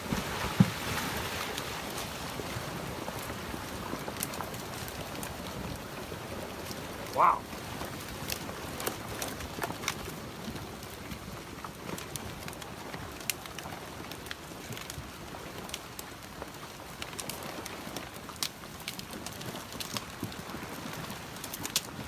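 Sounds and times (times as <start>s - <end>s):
floodwater rushing: 0.0s - 22.0s.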